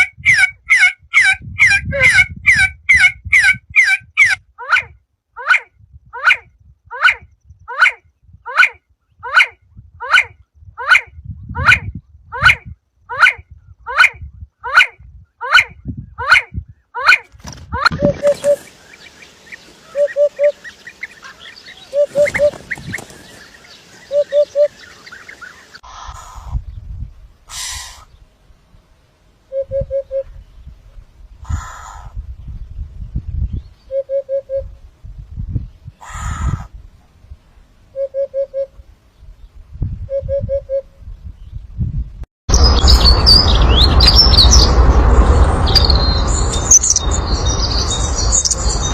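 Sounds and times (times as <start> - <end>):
small birds chirping: 17.8 - 26.9, 45.6 - 48.9
steady low rumble: 40.9 - 48.9
soft high bird chirps: 45.6 - 48.9.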